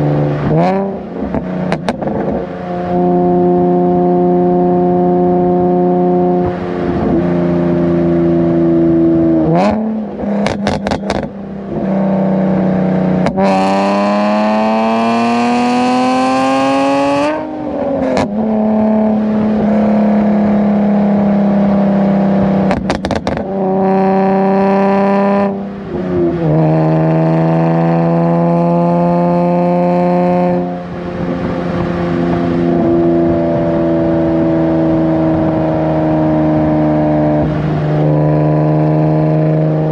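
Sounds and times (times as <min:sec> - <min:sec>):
exhaust cracks: 0:00.0 - 0:02.5, 0:09.4 - 0:13.8, 0:22.4 - 0:28.0
car exhaust accelerating: 0:00.0 - 0:39.9.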